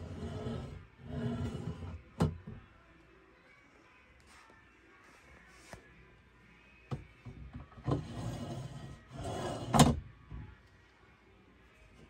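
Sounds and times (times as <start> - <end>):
door sliding and rubbing: 0.0 - 2.3, 7.8 - 10.0.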